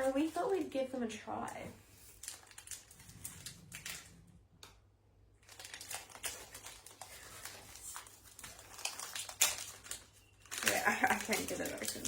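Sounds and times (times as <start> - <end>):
wrapper crinkling and rustling: 0.0 - 4.3, 5.3 - 12.0.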